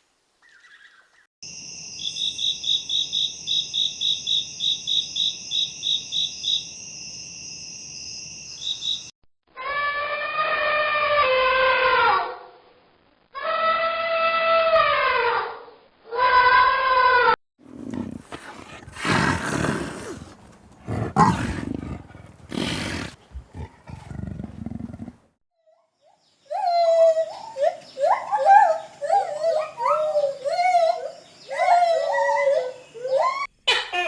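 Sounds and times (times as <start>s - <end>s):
farm animal calls: 17.8s - 25.2s.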